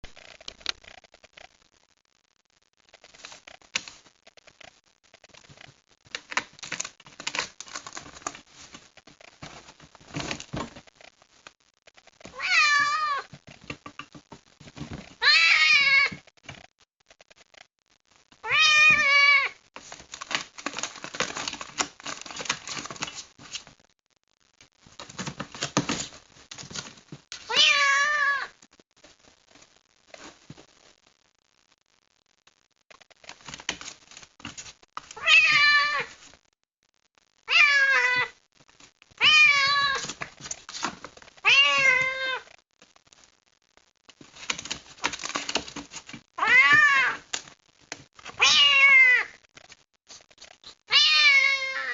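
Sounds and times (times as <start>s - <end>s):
scratchy rustling: 2.9s - 16.6s, 19.8s - 23.8s, 24.8s - 28.0s, 32.9s - 36.4s, 38.7s - 42.4s, 44.1s - 50.8s
kitten meowing loudly: 46.4s - 47.2s, 50.9s - 51.9s.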